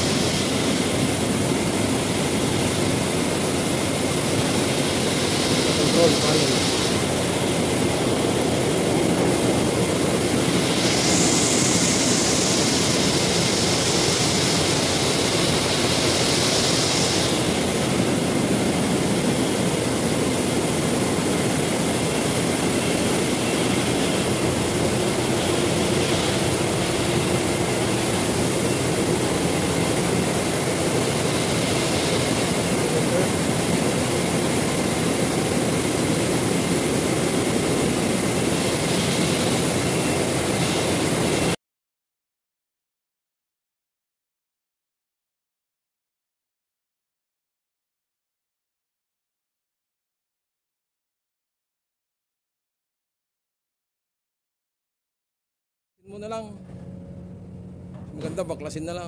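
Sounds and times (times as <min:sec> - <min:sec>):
fan motor running: 0:00.0 - 0:41.6, 0:56.1 - 0:59.0
hissing rush: 0:00.0 - 0:41.6.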